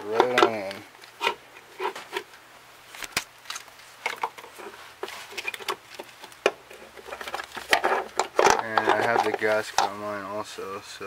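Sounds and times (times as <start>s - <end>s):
car parts clicking and knocking: 5.4s - 10.0s.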